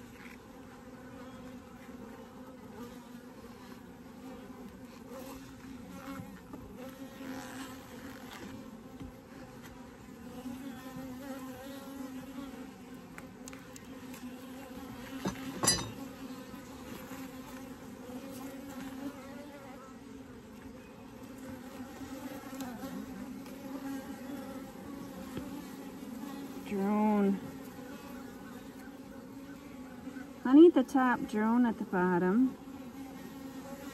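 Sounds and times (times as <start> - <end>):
honeybees buzzing: 0.0 - 33.9.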